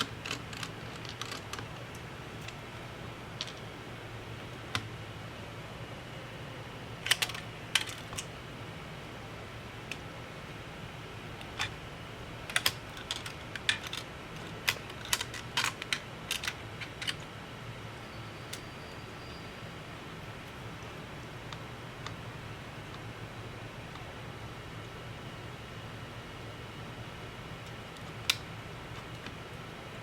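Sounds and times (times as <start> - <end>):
small tools clicking and tapping: 0.0 - 2.6, 12.5 - 17.2
faint low hum: 0.0 - 30.0.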